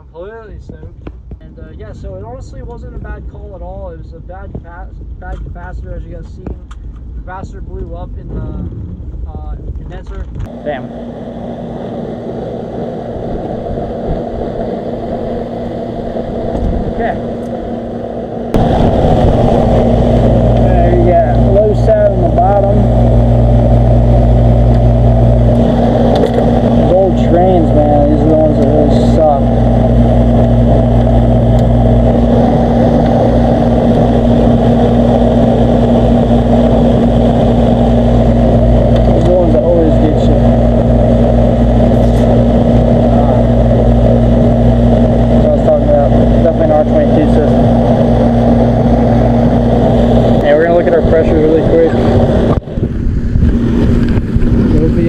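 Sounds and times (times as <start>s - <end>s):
condenser fan rushing: 0.0s - 55.0s
low electrical hum: 0.0s - 55.0s.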